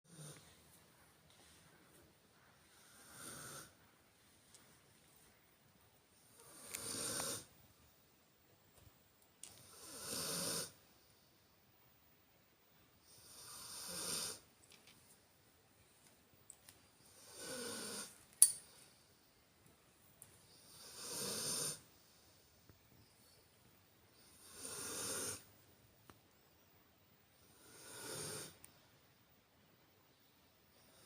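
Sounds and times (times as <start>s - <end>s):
loud snoring: 0.1s - 0.4s, 2.7s - 3.8s, 6.4s - 7.5s, 9.6s - 10.8s, 13.1s - 14.4s, 17.2s - 18.2s, 20.7s - 21.8s, 24.3s - 25.5s, 27.4s - 28.6s.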